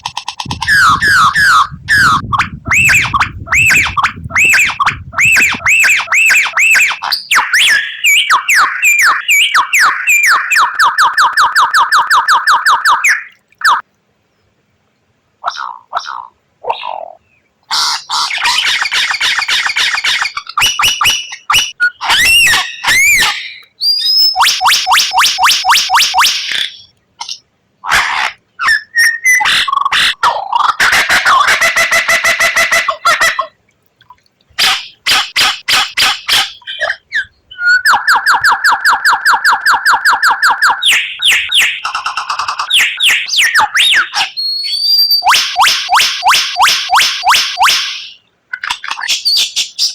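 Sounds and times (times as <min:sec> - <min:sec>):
bird singing rapid whistles: 0:00.4 - 0:13.8, 0:19.5 - 0:26.9, 0:28.6 - 0:29.9, 0:34.6 - 0:48.2.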